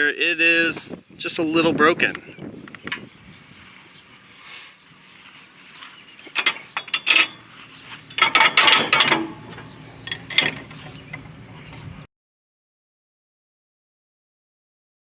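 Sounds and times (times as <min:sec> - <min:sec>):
metal parts clanking and scraping: 0:06.2 - 0:11.9.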